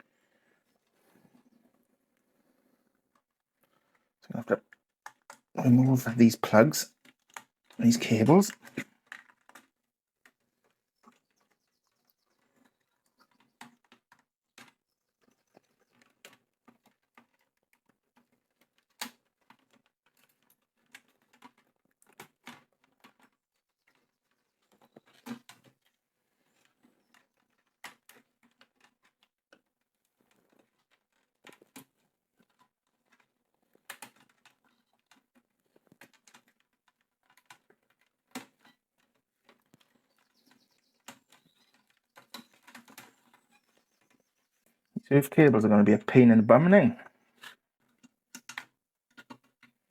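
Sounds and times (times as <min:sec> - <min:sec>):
faint clicks and taps of tools: 0:04.7 - 0:05.5, 0:08.5 - 0:44.2, 0:47.3 - 0:49.8.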